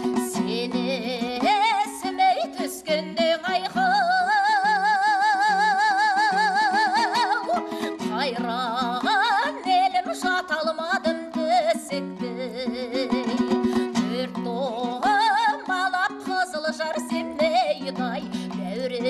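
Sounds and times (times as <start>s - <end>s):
plucked string accompaniment: 0.0s - 19.0s.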